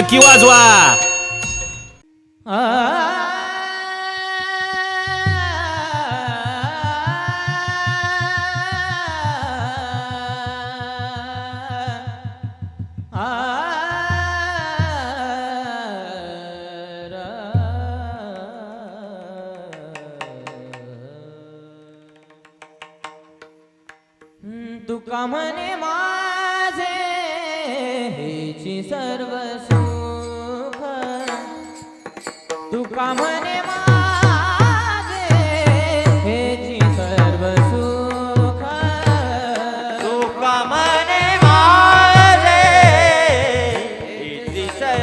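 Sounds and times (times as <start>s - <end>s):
drum strokes: 0.0s - 2.0s, 29.7s - 45.0s
man singing wordless melody: 0.0s - 22.4s, 24.4s - 45.0s.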